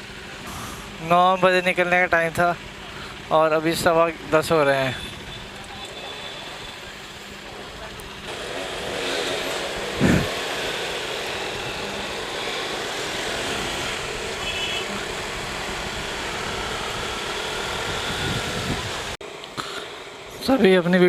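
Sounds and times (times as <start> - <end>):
motorcycles running: 0.0 - 19.2
road noise: 0.0 - 21.0
wind: 0.0 - 21.0
loud rush: 8.2 - 20.5.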